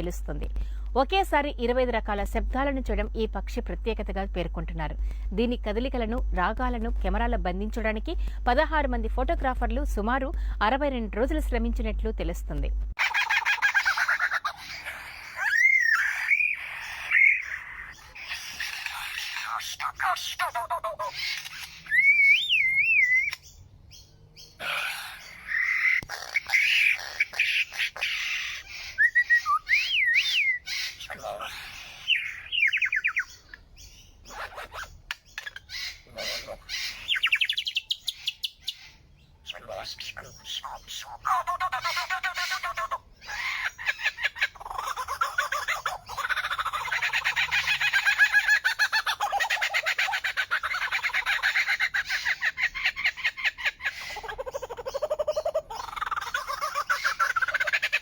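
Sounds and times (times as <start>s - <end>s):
bird chattering calls: 13.0s - 23.5s, 24.5s - 58.0s.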